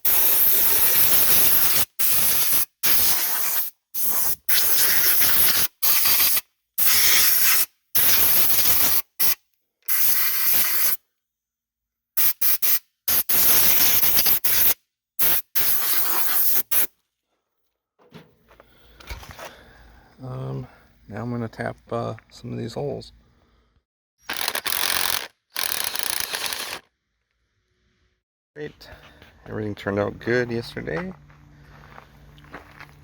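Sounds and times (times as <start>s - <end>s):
drill rushing hiss bursts: 24.3s - 26.8s.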